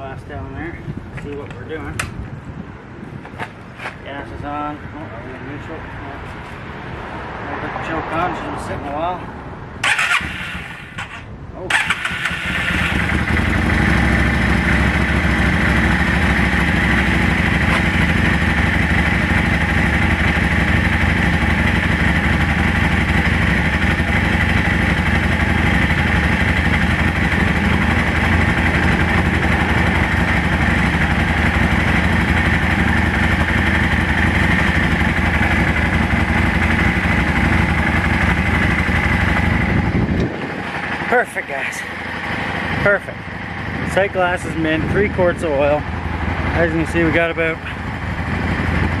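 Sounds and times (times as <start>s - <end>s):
motorcycle engine idling: 9.8s - 49.0s.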